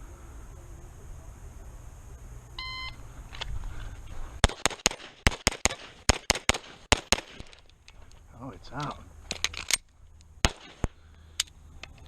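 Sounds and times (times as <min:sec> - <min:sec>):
shot timer beep: 0:02.6 - 0:03.0
pistol shots: 0:04.4 - 0:07.6, 0:10.4 - 0:11.0.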